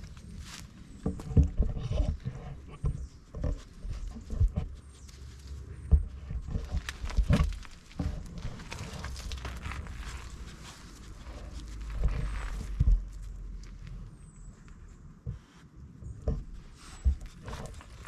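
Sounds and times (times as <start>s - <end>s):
low rumble: 5.5s - 15.2s.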